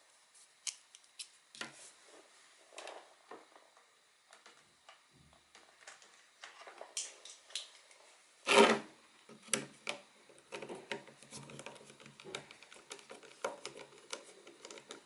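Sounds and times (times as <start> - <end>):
loud plastic scrape: 8.5 - 8.9
plastic clicks and scrapes: 8.5 - 15.0.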